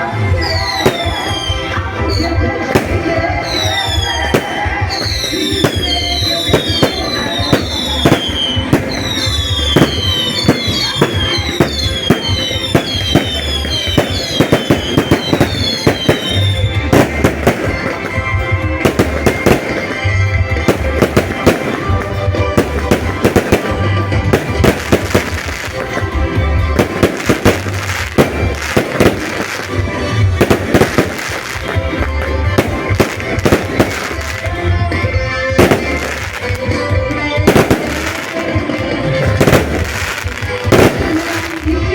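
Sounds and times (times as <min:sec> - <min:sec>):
fireworks whistles falling in pitch: 0:00.0 - 0:26.1
fireworks bangs and crackling: 0:00.0 - 0:41.9
music with low beat: 0:00.2 - 0:41.9.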